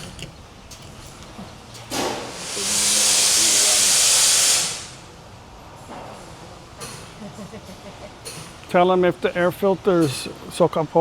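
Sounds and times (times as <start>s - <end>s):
compressed air hissing: 1.9s - 5.2s.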